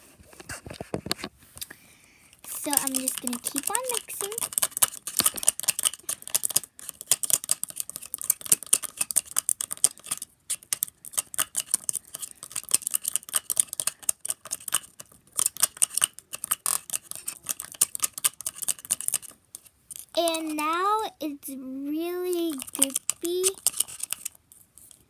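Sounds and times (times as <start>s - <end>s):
tool scraping slime in bowl: 2.5s - 20.6s, 22.5s - 24.4s.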